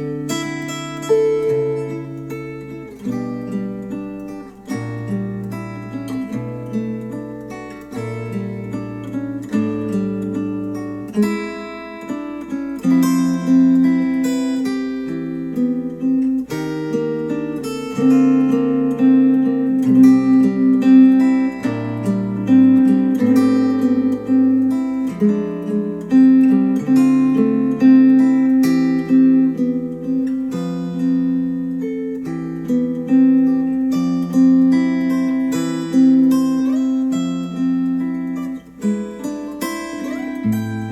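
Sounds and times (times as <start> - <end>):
acoustic guitar strumming chords: 0.0 - 40.9.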